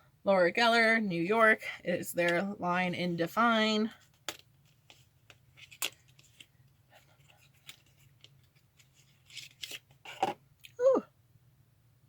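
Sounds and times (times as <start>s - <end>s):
package clicks and rustling: 4.2s - 6.6s, 7.3s - 10.4s.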